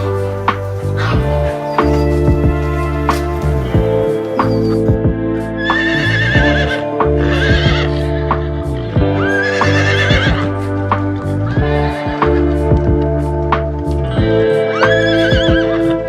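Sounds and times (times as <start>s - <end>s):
background music: 0.0s - 16.0s
horse whinnying: 1.0s - 5.0s, 5.6s - 8.1s, 9.2s - 10.7s, 14.7s - 16.0s.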